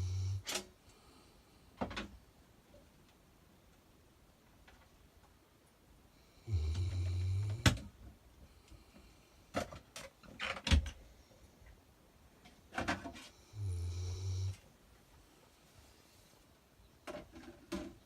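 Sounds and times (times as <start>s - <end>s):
dog snoring: 0.0s - 0.4s, 6.2s - 7.9s, 13.4s - 14.6s.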